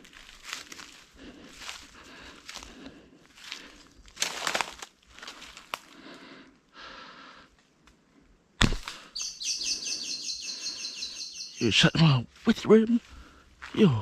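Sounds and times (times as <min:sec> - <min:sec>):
rustling through brush: 0:00.0 - 0:06.1
sharp crack: 0:08.6 - 0:09.1
bird chirping: 0:09.1 - 0:12.2.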